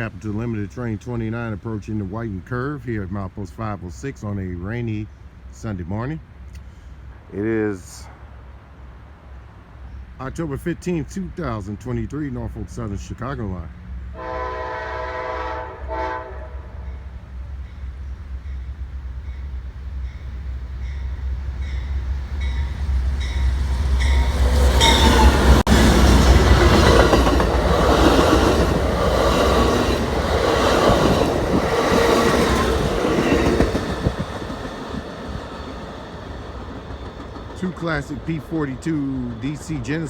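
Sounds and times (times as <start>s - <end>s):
diesel locomotives rumbling: 0.0s - 40.0s
train horn chord: 14.2s - 17.1s
train cars clacking over rails: 18.4s - 40.0s.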